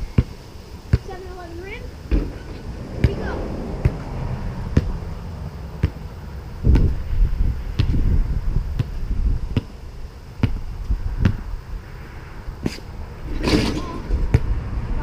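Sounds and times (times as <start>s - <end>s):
low rumble: 1.9s - 9.5s
basketball bouncing: 5.8s - 6.0s, 6.7s - 7.0s, 10.4s - 10.6s.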